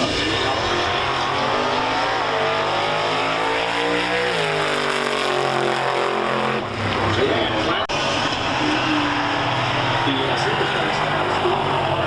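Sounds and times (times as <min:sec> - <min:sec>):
drag car engine accelerating: 0:00.0 - 0:12.0.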